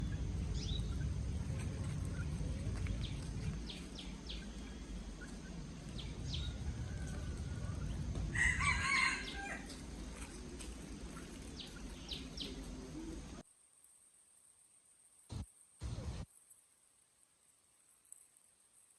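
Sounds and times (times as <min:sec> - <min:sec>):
steady low rumble: 0:00.0 - 0:13.4
rooster crowing: 0:06.3 - 0:09.8.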